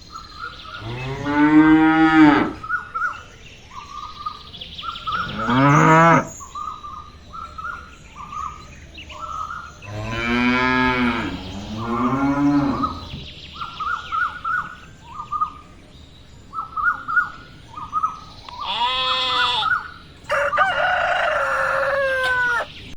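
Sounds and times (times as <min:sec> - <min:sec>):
small birds chirping: 0:00.0 - 0:22.9
cattle mooing: 0:00.8 - 0:02.6, 0:05.3 - 0:06.3, 0:09.9 - 0:13.1, 0:18.7 - 0:19.8
rooster crowing: 0:19.0 - 0:22.8.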